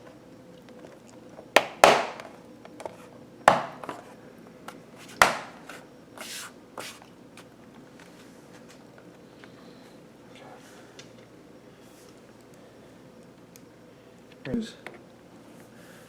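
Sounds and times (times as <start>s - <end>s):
sharp knocks on hard surface: 1.6s - 2.3s, 3.5s - 4.0s, 5.2s - 5.6s.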